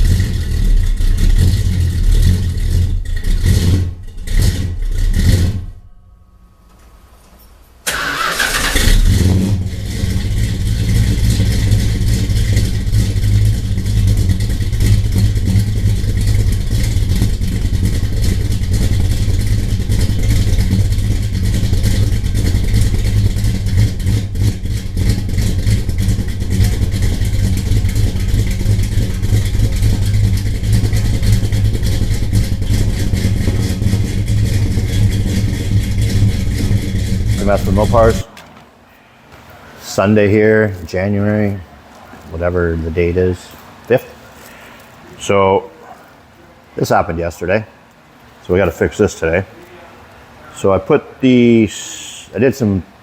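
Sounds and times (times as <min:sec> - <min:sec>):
car engine starting and idling: 0:00.0 - 0:38.9.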